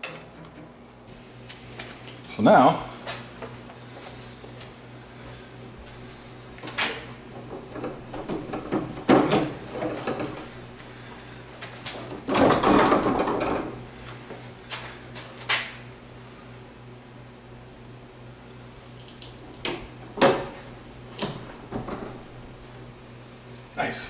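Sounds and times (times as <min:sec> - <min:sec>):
barn doors rolling on track: 0:06.7 - 0:10.9, 0:12.0 - 0:13.9, 0:20.0 - 0:23.0
door knocks and clunks: 0:07.3 - 0:10.4, 0:12.2 - 0:13.8.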